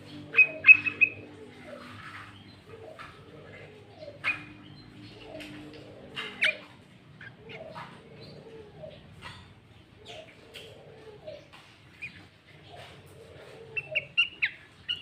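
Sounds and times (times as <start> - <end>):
low cooing: 0.0 - 15.0.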